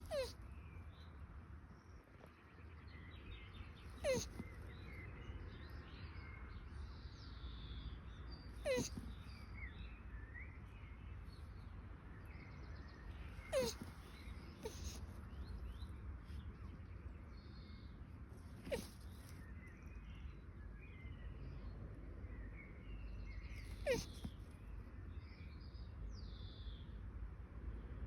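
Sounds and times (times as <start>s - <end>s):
turtle crying out: 0.0s - 0.3s, 4.0s - 4.4s, 8.7s - 9.0s, 13.5s - 13.8s.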